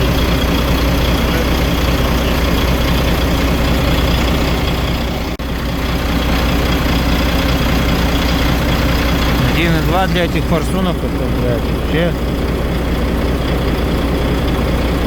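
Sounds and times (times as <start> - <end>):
diesel truck engine idling: 0.0 - 15.0.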